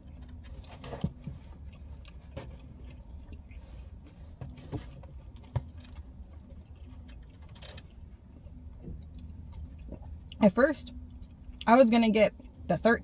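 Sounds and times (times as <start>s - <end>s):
person chewing: 0.0s - 4.0s, 5.3s - 10.4s
steady low hum: 0.0s - 13.0s.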